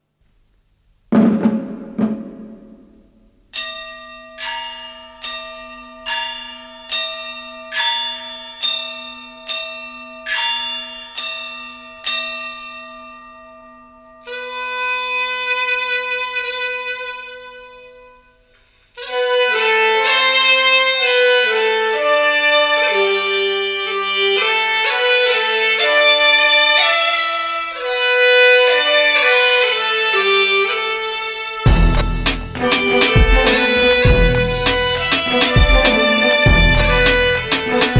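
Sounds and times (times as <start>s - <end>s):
low struck notes: 1.1s - 3.7s, 31.7s - 37.9s
instrumental melody: 19.0s - 37.9s
held drone: 31.7s - 37.9s.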